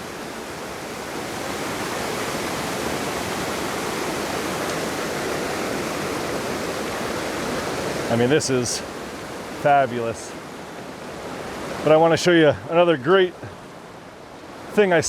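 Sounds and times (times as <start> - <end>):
waterfall rushing: 0.0 - 15.0.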